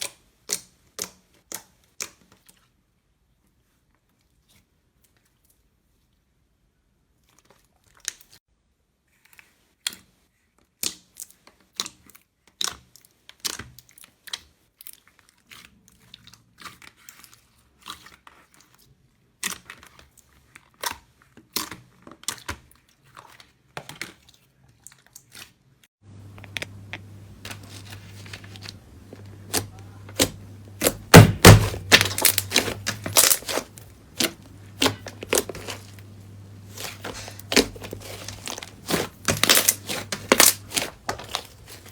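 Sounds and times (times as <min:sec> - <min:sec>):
slime crunching and crackling: 0:10.8 - 0:41.9
steady low hum: 0:26.0 - 0:41.9.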